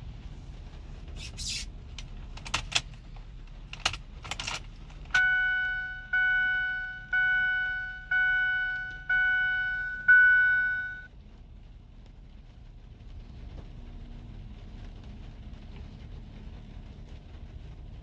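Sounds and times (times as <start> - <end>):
dashboard warning chime: 5.2 - 11.1.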